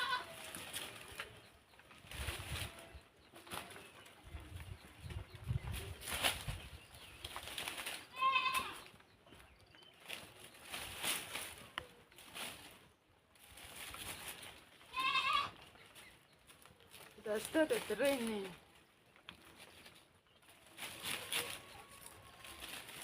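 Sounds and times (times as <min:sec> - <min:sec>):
goat bleating: 0:00.0 - 0:00.5, 0:08.0 - 0:08.9, 0:14.8 - 0:15.6
rustling and crackling: 0:00.0 - 0:23.0.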